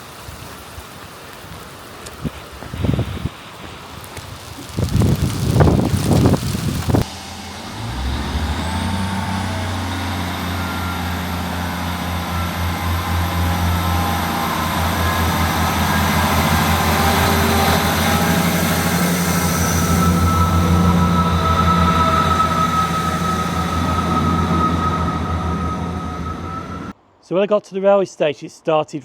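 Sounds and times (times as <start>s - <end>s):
diesel train engine drone: 0.1s - 27.0s
wind noise on microphone: 2.1s - 7.1s
faint high whine: 3.8s - 27.0s.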